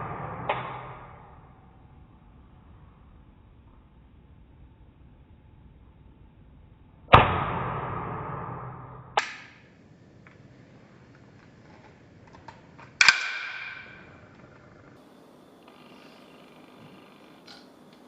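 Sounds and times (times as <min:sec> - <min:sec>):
airsoft pistol shots: 0:07.1 - 0:09.7, 0:12.9 - 0:14.3.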